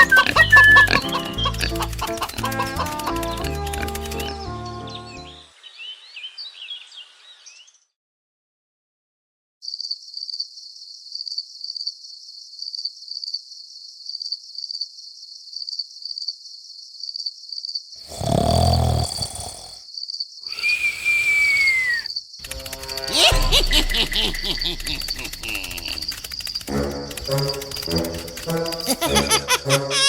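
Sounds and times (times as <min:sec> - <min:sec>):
crickets chirping: 0:18.1 - 0:19.8, 0:20.5 - 0:29.8.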